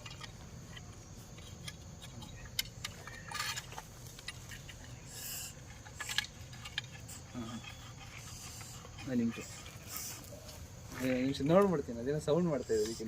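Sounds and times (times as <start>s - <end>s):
light clicks taps and scrapes: 0.0s - 11.8s.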